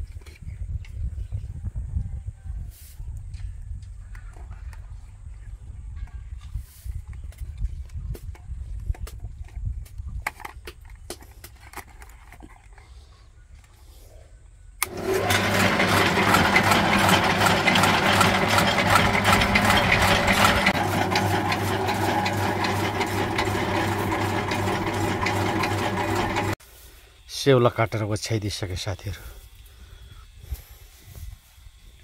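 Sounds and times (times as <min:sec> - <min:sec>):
chaff cutter chopping branches: 0:14.8 - 0:26.6.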